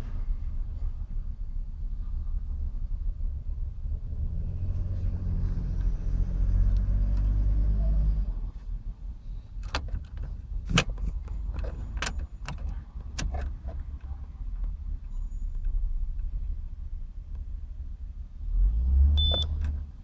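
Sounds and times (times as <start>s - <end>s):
diesel engine cranking: 4.5s - 20.0s
sharp clicks and knocks: 9.6s - 14.8s.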